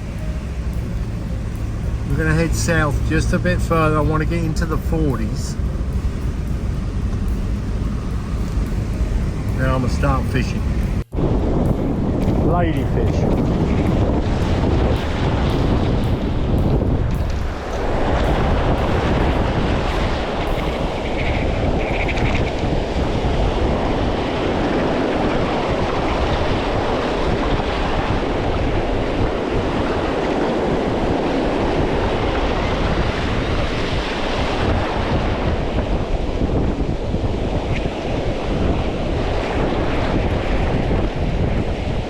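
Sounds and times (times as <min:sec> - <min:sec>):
wind buffeting microphone: 0:00.0 - 0:42.0
surf breaking on beach: 0:09.5 - 0:42.0.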